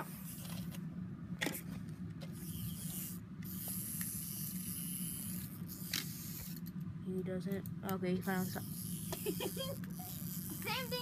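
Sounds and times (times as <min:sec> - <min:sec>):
clockwork toy motor whirring: 0:02.3 - 0:06.7, 0:07.9 - 0:11.0.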